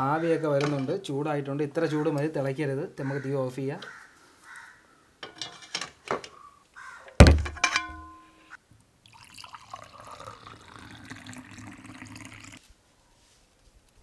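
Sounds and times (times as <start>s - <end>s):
metal pan clinking and clanking: 5.2s - 6.3s, 7.2s - 8.2s
liquid pouring in a stream: 9.1s - 12.6s.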